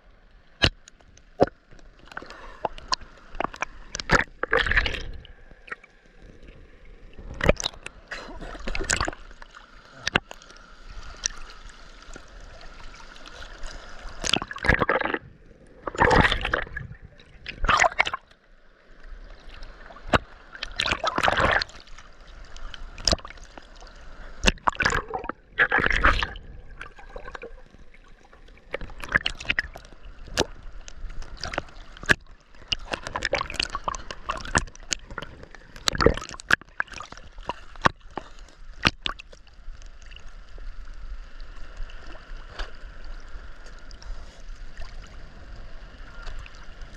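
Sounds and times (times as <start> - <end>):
water clicks and drips: 0.6 - 5.9, 7.2 - 15.2, 19.5 - 23.8, 24.4 - 27.5, 28.5 - 40.4
seawater splashing and sloshing: 7.2 - 18.3, 19.2 - 39.4.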